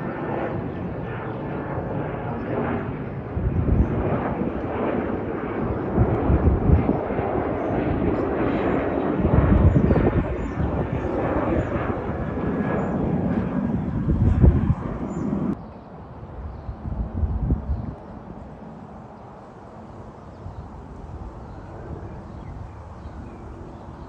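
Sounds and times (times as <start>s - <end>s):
jet engines roaring: 0.0s - 16.0s.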